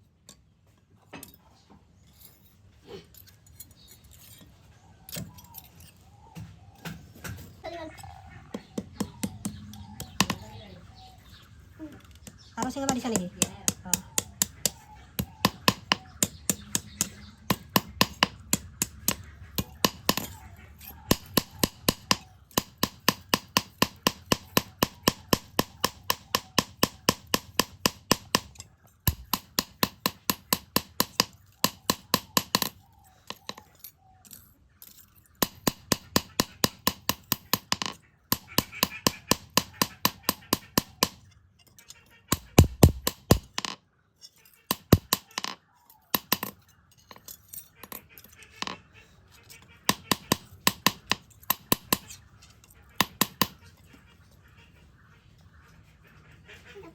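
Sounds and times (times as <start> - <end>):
hammer striking steel on anvil: 13.1 - 32.8.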